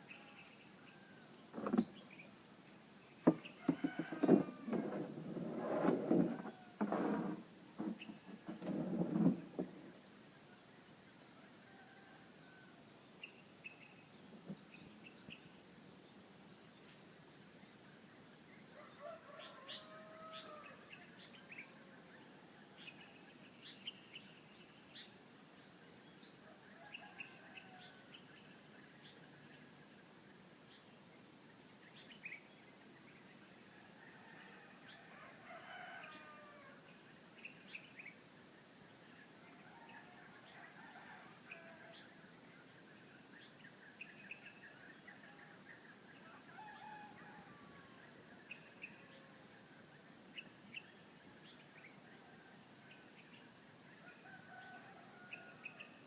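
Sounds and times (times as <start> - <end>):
songbirds chirping: 0.0 - 56.0
roosters crowing: 3.3 - 9.8, 18.8 - 20.9, 34.2 - 36.8.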